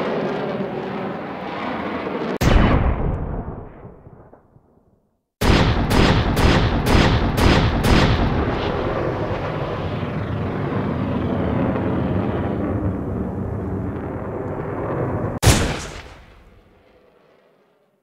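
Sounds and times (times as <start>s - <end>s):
rumble of gunfire: 2.4s - 4.8s, 5.4s - 9.8s, 15.4s - 16.8s
gunshots: 5.4s - 9.0s, 15.4s - 16.7s.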